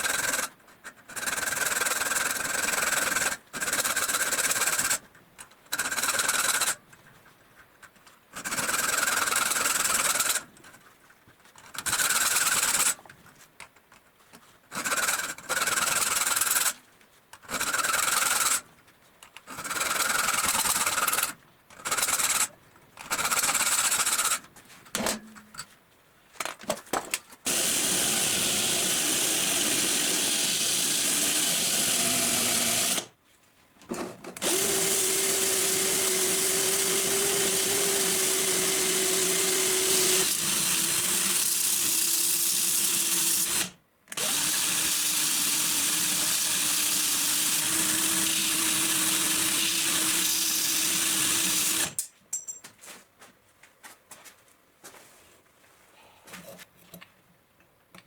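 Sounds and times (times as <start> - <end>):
continuous grinding: 0.0 - 10.9, 11.5 - 24.5, 27.5 - 33.1, 34.0 - 52.1.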